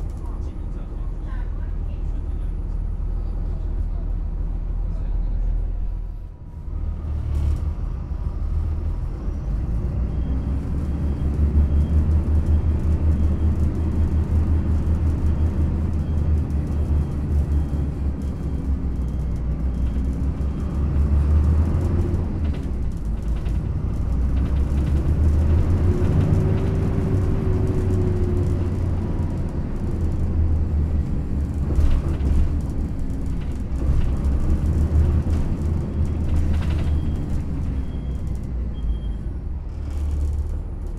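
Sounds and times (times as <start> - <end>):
bus engine rumble: 0.0 - 40.9
bus body knocking: 29.9 - 38.6.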